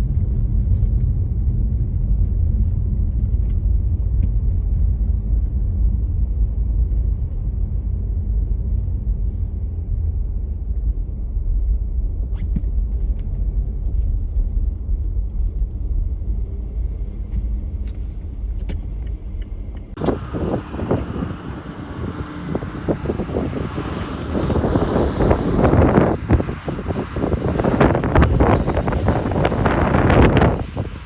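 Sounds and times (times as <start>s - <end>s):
car driving on snowy road: 0.0s - 31.0s
wind gust on microphone: 19.9s - 31.0s.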